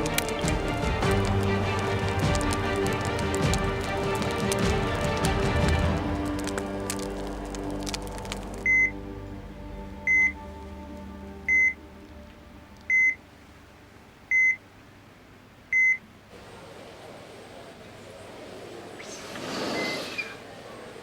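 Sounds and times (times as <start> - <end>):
music: 0.0 - 14.0
heart monitor beeping: 8.6 - 8.9, 10.1 - 10.4, 11.5 - 11.8, 12.9 - 13.2, 14.3 - 14.6, 15.7 - 16.0.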